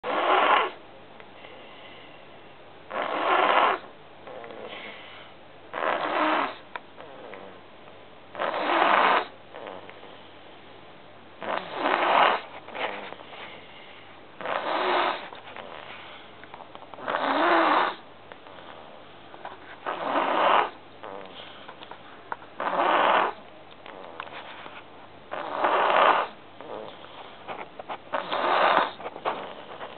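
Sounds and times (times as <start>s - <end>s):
loud snoring: 0.0s - 0.8s, 2.9s - 4.9s, 5.7s - 7.6s, 8.3s - 9.9s, 11.4s - 12.4s, 14.4s - 15.8s, 17.0s - 18.0s, 19.8s - 21.5s, 22.6s - 24.2s, 25.3s - 27.1s, 28.1s - 29.9s
soft breathing: 1.3s - 2.6s, 4.4s - 5.5s, 11.8s - 17.0s, 18.0s - 22.7s, 26.6s - 29.9s.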